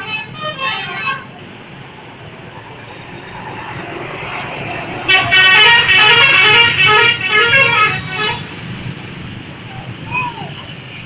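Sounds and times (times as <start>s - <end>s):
bus horn playing a melody: 0.0s - 1.4s, 5.0s - 8.6s
road noise: 0.0s - 11.0s.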